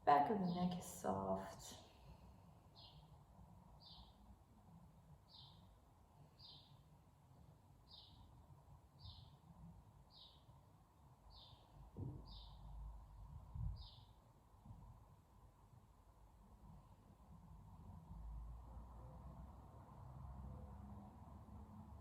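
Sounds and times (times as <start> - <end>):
bird chirping: 2.7 - 3.2, 3.8 - 4.3, 5.3 - 6.9, 7.8 - 8.4, 9.0 - 9.5, 10.1 - 10.6, 11.3 - 12.8, 13.6 - 14.2.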